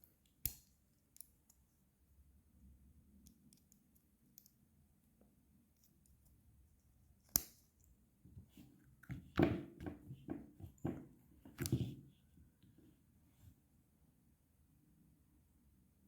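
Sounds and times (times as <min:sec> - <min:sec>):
handling clicks and knocks: 0:09.0 - 0:12.0.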